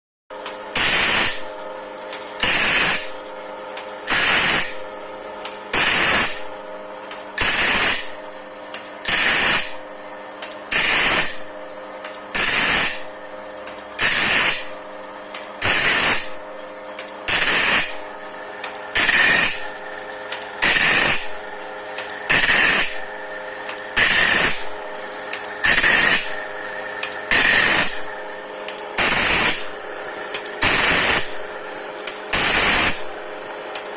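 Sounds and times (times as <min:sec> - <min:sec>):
motor hum: 0:00.4 - 0:33.9
loud grinding: 0:00.7 - 0:01.6, 0:02.3 - 0:03.2, 0:04.0 - 0:05.0, 0:05.7 - 0:06.5, 0:07.4 - 0:08.2, 0:09.0 - 0:09.8, 0:10.7 - 0:11.5, 0:12.3 - 0:13.1, 0:13.9 - 0:16.4, 0:17.2 - 0:33.9.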